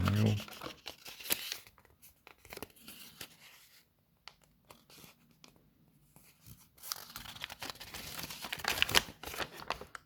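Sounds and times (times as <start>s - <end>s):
paper leaflet rustling: 0.0s - 5.6s, 6.2s - 10.0s.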